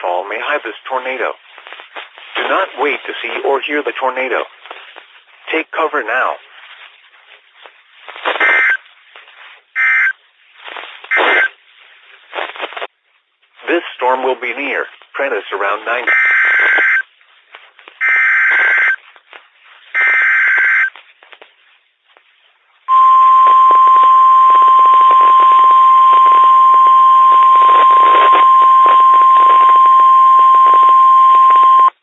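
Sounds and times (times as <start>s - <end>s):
static crackling: 0.0s - 32.0s
two-tone digital data bursts: 8.3s - 8.8s, 11.1s - 11.6s, 16.1s - 17.0s, 18.0s - 19.0s, 19.9s - 20.9s, 22.9s - 32.0s
steady warning alarm tone: 22.9s - 31.9s.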